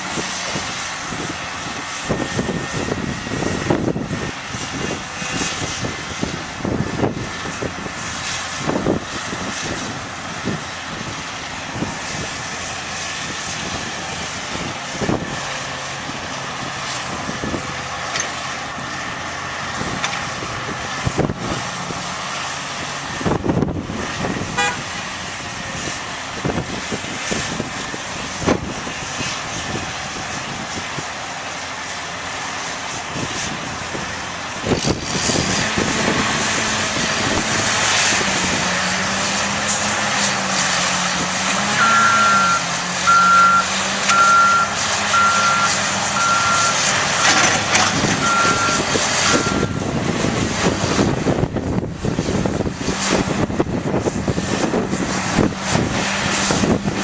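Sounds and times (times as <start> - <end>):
diesel engines under load: 0.0 - 57.0
back-up alarm beeping: 41.8 - 47.4, 48.2 - 49.9.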